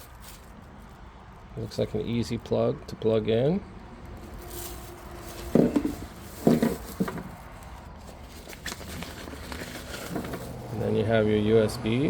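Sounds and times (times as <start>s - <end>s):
packaging rustling: 0.0s - 0.8s, 4.2s - 10.8s.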